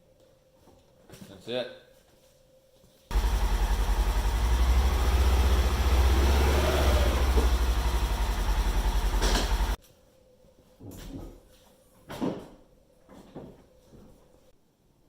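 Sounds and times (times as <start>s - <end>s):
engine idling: 3.1s - 9.8s.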